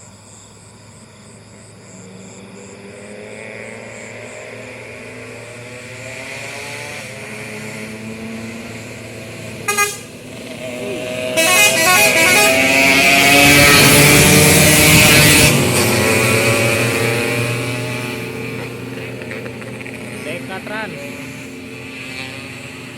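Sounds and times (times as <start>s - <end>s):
heavy diesel engine: 4.2s - 22.9s
horn blast: 9.6s - 17.4s.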